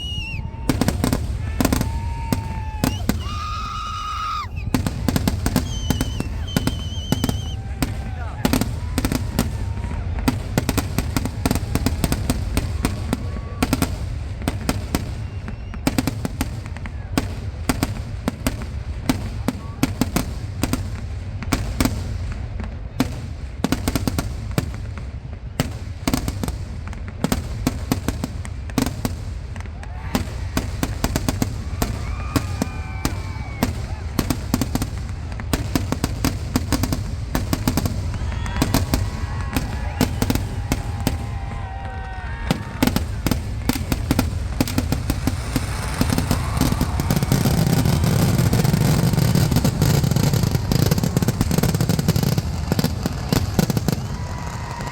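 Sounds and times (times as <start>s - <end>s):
voices: 0.0s - 13.8s
firecracker bangs: 0.0s - 54.9s.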